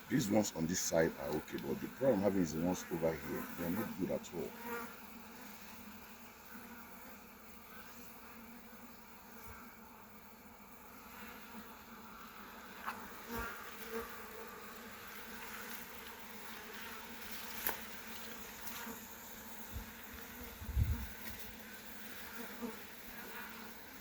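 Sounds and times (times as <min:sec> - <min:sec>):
honeybees buzzing: 0:00.0 - 0:24.0
hive frames clicking and knocking: 0:01.2 - 0:01.8.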